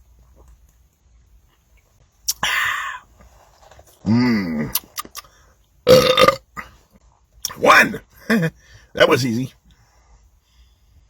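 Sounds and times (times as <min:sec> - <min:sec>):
man belching: 0:04.0 - 0:04.8, 0:05.9 - 0:06.7
man's voiced sound: 0:07.5 - 0:09.6.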